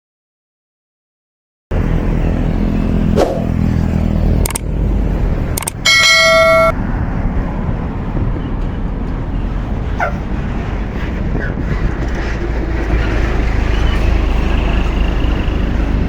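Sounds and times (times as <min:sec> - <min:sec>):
bus engine running: 0:01.7 - 0:16.0
traffic noise: 0:01.7 - 0:16.0
sharp clicks: 0:04.4 - 0:04.7, 0:05.6 - 0:06.7
bus horn blast: 0:05.8 - 0:06.7.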